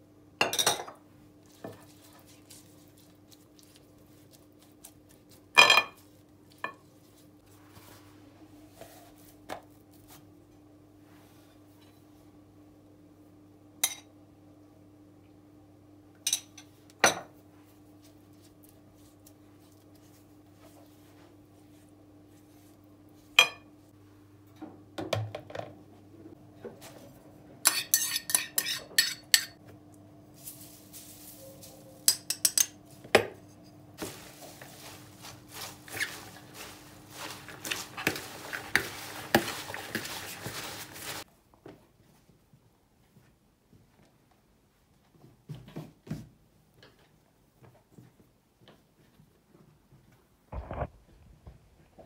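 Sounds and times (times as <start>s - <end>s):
dishes and cutlery clinking: 0.4s - 1.0s, 5.6s - 6.0s, 23.4s - 23.7s, 27.7s - 29.6s, 31.4s - 33.5s.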